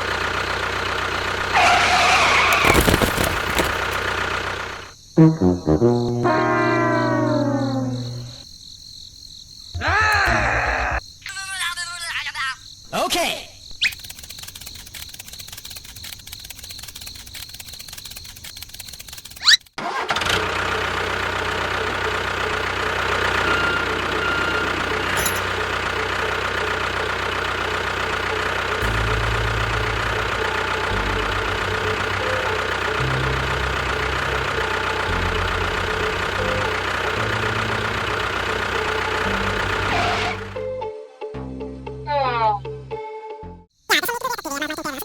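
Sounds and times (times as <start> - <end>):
vehicle engine idling: 0.0 - 5.0, 19.9 - 40.7
sharp click: 13.8 - 19.8.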